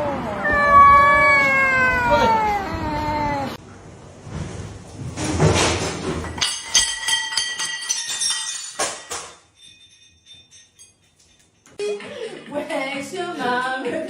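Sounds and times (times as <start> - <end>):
hard objects clattering: 5.0 - 11.8.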